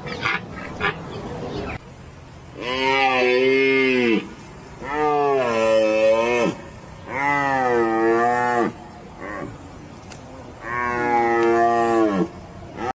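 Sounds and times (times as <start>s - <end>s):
large animal moaning calls: 10.6s - 12.9s.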